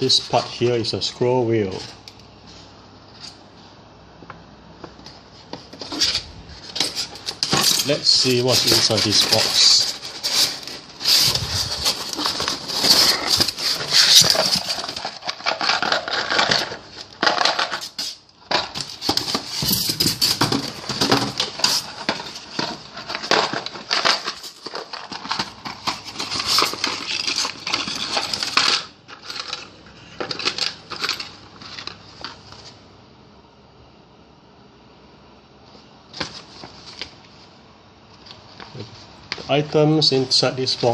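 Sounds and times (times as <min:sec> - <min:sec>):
packaging rustling and crinkling: 0:05.4 - 0:32.8
tools clicking and rattling: 0:05.8 - 0:32.3.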